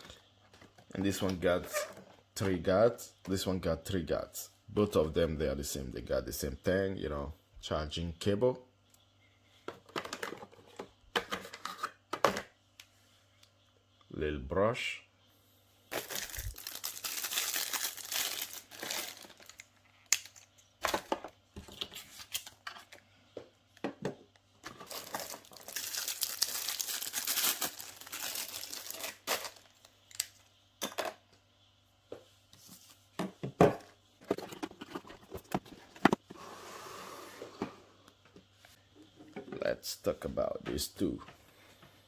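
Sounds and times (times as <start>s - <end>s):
plastic parts clicking and knocking: 9.7s - 12.5s, 33.2s - 36.3s
plastic packaging crinkling: 15.9s - 20.5s, 24.7s - 30.3s.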